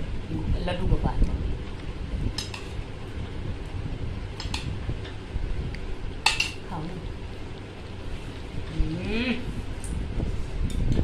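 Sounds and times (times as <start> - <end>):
steady low rumble: 0.0 - 11.0
spoon clinking against dish: 6.2 - 6.6.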